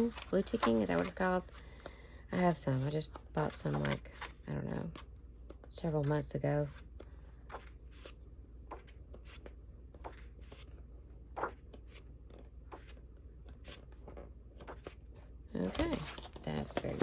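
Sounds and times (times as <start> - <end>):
paper rustling: 0.0 - 1.6
faint steady hum: 0.0 - 17.0.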